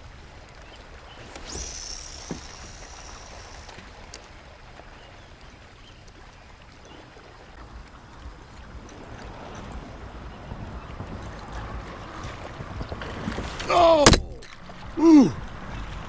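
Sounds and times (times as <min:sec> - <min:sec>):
water lapping and trickling: 0:00.0 - 0:16.0.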